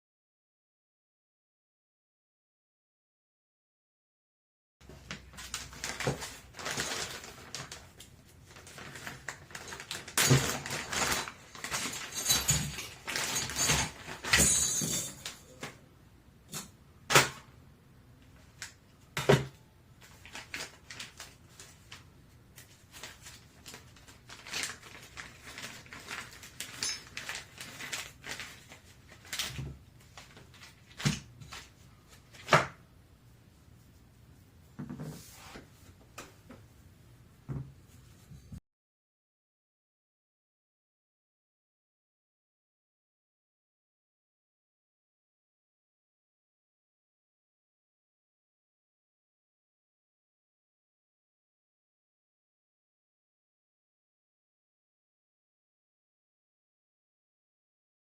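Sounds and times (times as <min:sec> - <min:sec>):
metal parts rattling and clicking: 0:09.6 - 0:15.4.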